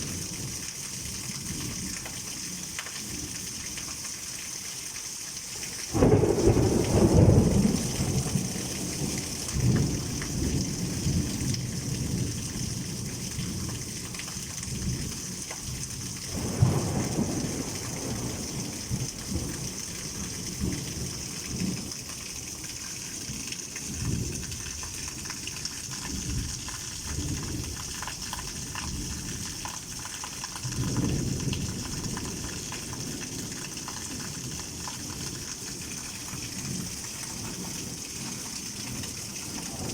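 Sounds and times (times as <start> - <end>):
heavy rain hissing: 5.6 - 14.0, 16.2 - 24.5, 26.9 - 39.9
thunder rumbling: 5.9 - 12.4, 16.3 - 21.8, 38.9 - 39.9.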